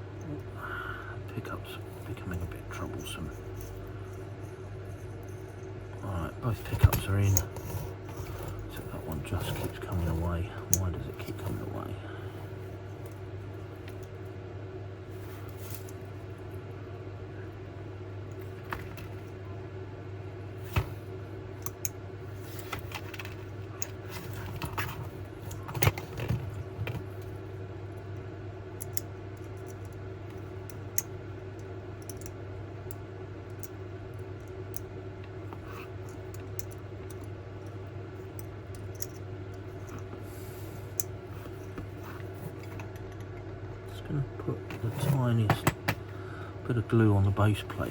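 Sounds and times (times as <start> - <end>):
steady low hum: 0.0 - 47.9
small metal parts clicking: 28.8 - 30.0, 32.0 - 33.8, 38.3 - 39.2.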